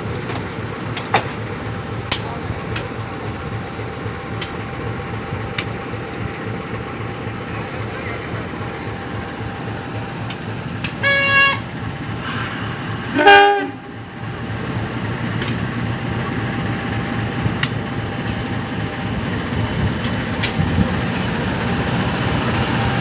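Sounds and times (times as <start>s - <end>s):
locomotive engine rumble: 0.0s - 23.0s
locomotive horn blast: 10.9s - 11.7s, 13.1s - 14.0s
sharp clicks: 17.6s - 18.4s.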